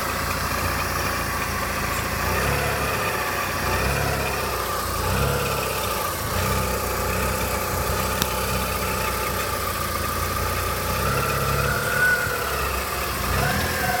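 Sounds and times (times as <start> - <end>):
car engine idling: 0.0 - 14.0
whistle from under bonnet: 11.4 - 12.6.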